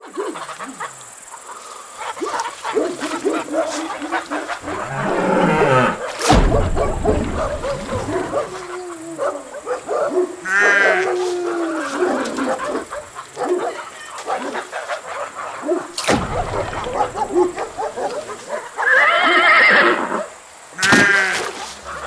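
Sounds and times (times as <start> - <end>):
farm animal calls: 4.6 - 8.6
sharp knock with low rumble: 4.6 - 8.6.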